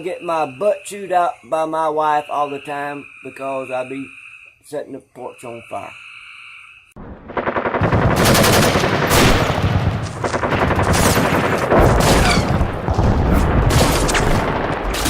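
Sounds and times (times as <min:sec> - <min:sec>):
gunfire-like bangs and crackling: 0:07.2 - 0:15.0.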